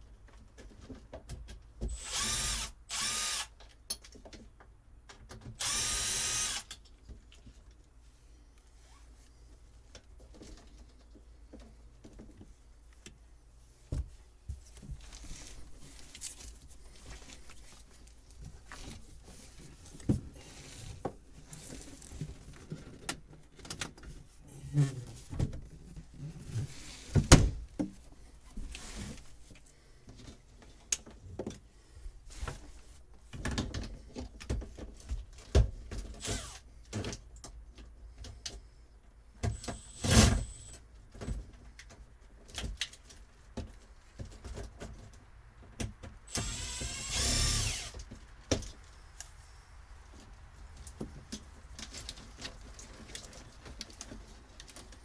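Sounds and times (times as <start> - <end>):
clicks and rustling of handled wiring: 14.6 - 26.9, 40.5 - 46.3, 50.0 - 55.0.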